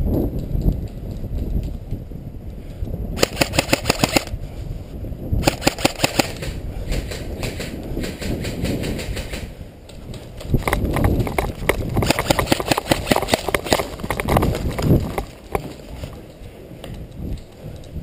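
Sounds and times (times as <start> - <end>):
airsoft guns firing: 3.2 - 4.3, 5.4 - 9.5, 12.0 - 14.5.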